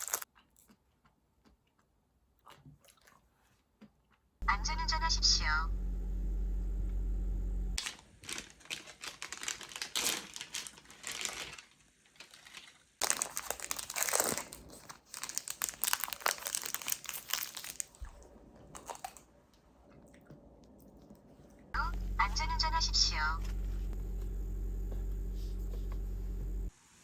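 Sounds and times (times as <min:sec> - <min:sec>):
steady low hum: 0:04.4 - 0:07.8, 0:21.8 - 0:26.7
packaging crinkling: 0:07.8 - 0:18.0.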